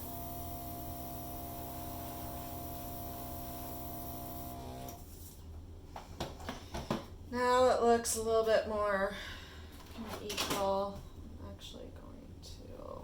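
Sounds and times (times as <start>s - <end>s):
hair dryer running: 0.0s - 5.0s.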